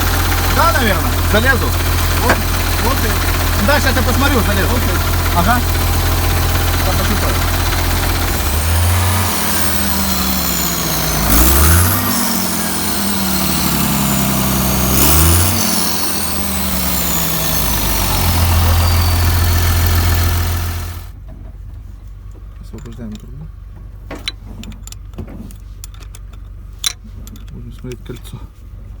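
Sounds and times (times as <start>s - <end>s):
high turbo whistle: 0.0s - 21.1s
diesel engine idling and revving: 0.0s - 21.2s.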